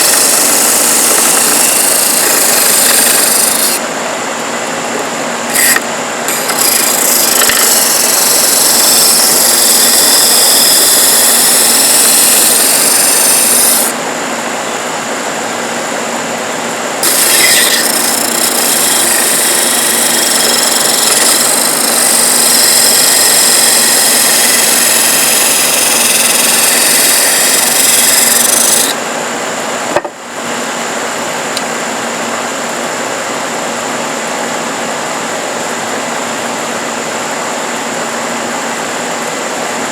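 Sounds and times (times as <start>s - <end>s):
disc sander motor hum: 0.0s - 14.2s, 17.0s - 29.0s.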